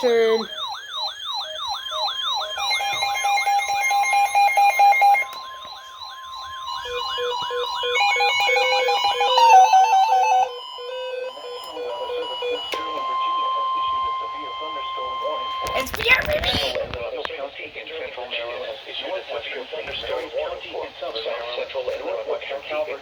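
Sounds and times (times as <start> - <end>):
rising and falling siren alarm: 0.0 - 16.1
beeping at several pitches: 0.0 - 16.7
steady high alarm tone: 0.0 - 16.8.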